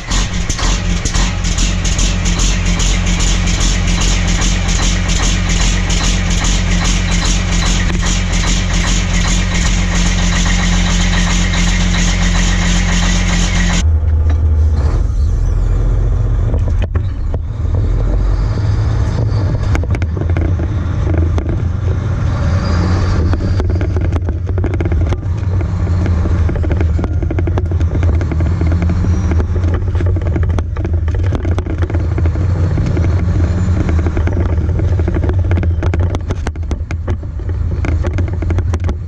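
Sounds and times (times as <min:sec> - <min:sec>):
deeper engine rising and falling: 0:00.0 - 0:39.0
heavy vehicle engine pulsing: 0:00.0 - 0:39.0.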